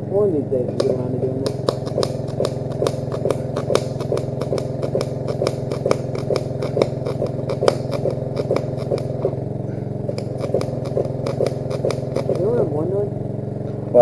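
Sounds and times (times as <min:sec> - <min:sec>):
welder engine running: 0:00.0 - 0:14.0
welding arc crackling and popping: 0:00.8 - 0:09.4, 0:10.1 - 0:12.6.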